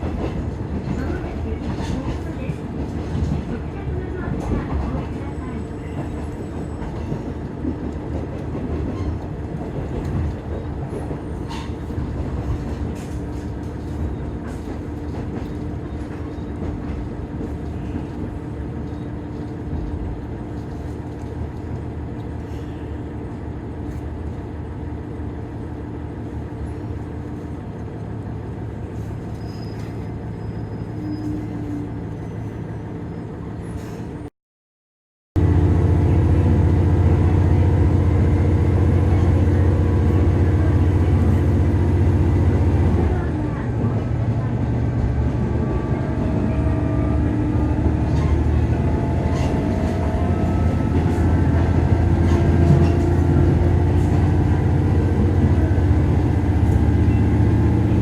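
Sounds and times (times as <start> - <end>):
diesel railcar engine drone: 0.0 - 34.3, 35.4 - 58.0
wheel and rail noise: 35.4 - 58.0.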